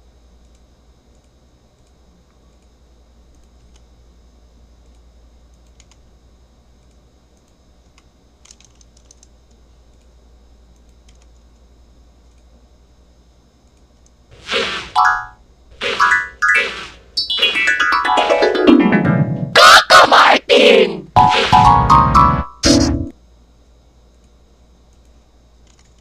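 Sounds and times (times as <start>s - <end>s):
computer keyboard typing: 5.6s - 6.0s, 8.4s - 9.3s, 10.8s - 11.3s, 25.6s - 26.0s.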